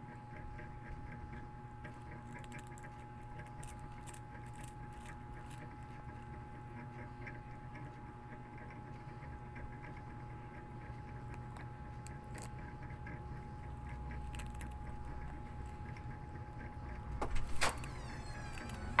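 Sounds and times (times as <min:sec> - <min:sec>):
cat chewing: 0:01.8 - 0:07.9, 0:08.5 - 0:16.4
steady low hum: 0:08.7 - 0:19.0.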